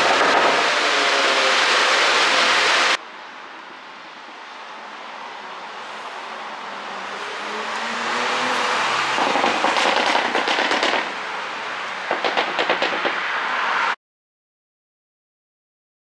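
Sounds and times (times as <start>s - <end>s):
exhaust pops and crackles: 0.0s - 1.0s, 9.2s - 11.2s, 12.1s - 13.4s
car exhaust revving: 0.0s - 3.0s, 6.4s - 13.9s.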